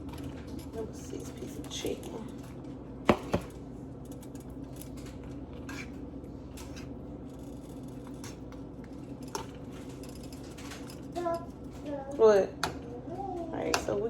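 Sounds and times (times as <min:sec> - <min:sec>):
steady background hum: 0:00.0 - 0:14.0
utensil scraping a pan: 0:05.6 - 0:06.0.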